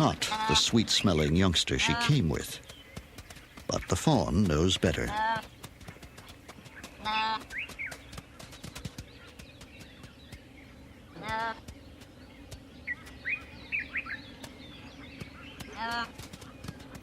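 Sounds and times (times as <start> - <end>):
impala bleating: 0.0 - 2.4, 4.9 - 5.5, 7.0 - 7.5, 11.1 - 11.6, 15.7 - 16.2
bird chirps: 0.3 - 17.0.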